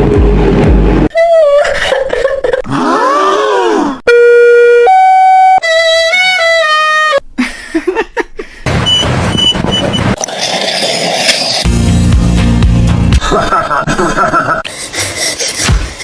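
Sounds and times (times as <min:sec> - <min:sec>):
soundtrack music: 0:11.6 - 0:14.2.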